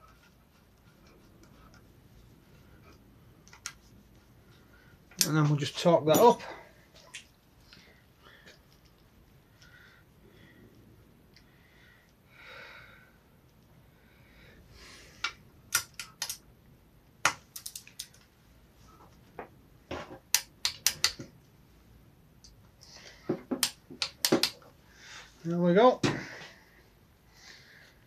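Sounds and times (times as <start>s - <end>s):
hand tool clicking on metal: 20.3s - 21.2s.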